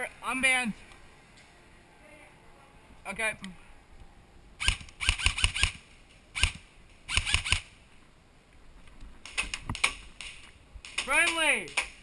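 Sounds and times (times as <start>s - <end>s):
airsoft guns firing bursts: 4.6s - 5.8s.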